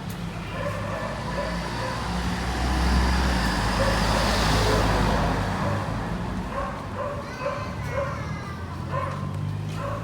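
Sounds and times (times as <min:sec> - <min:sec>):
vehicle passing by: 0:01.2 - 0:06.4.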